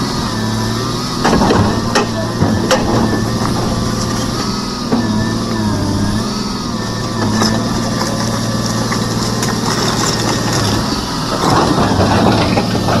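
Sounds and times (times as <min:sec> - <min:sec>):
excavator diesel engine running: 0:00.0 - 0:13.0
scattered knocks: 0:01.2 - 0:05.2.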